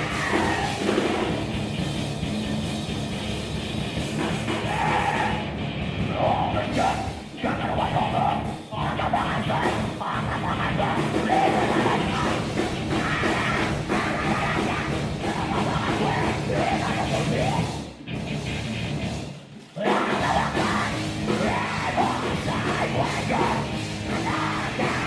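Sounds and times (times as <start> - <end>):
person singing or shouting: 0.0 - 1.3, 4.5 - 5.5, 6.1 - 17.8, 19.8 - 25.0
heavy rock band playing: 0.0 - 25.0.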